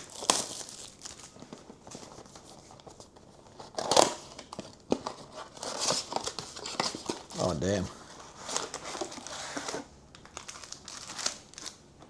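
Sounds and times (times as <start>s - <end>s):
plastic packaging crinkling: 0.0s - 11.8s.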